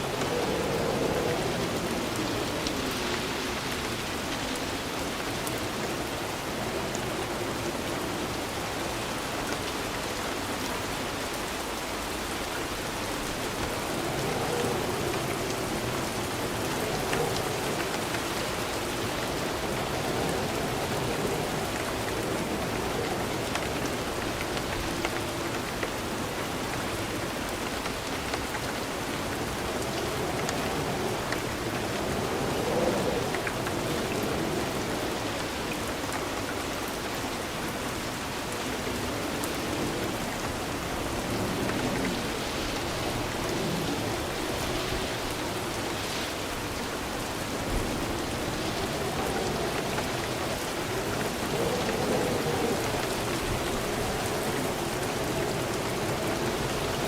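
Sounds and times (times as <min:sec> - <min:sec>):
steady rain falling: 0:00.0 - 0:57.0
raindrops ticking: 0:12.6 - 0:35.1, 0:47.6 - 0:57.0.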